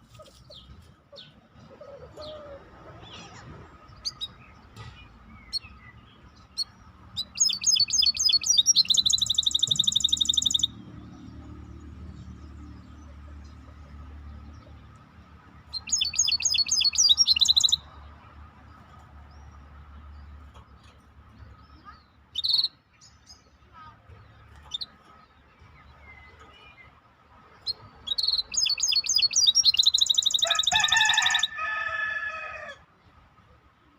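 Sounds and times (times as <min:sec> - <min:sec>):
bird chirps: 0:03.1 - 0:11.6, 0:15.7 - 0:18.0, 0:21.7 - 0:23.5, 0:27.6 - 0:31.4
songbird trilling song: 0:03.1 - 0:13.6, 0:15.6 - 0:18.0, 0:19.3 - 0:23.6, 0:24.2 - 0:31.6.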